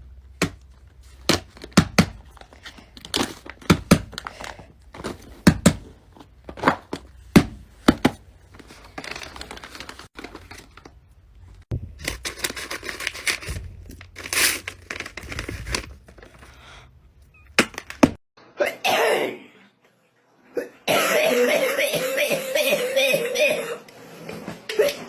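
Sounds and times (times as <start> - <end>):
crinkling rustling: 0.2 - 18.1.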